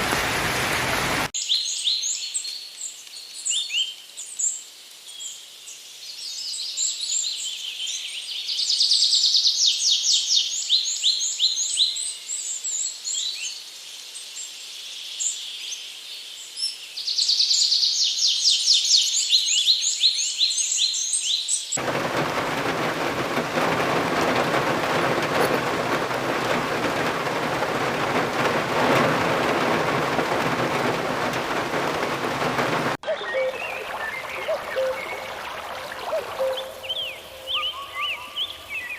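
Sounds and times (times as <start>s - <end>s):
rushing water: 0.0s - 1.4s, 21.8s - 38.9s
small birds chirping: 21.3s - 38.9s.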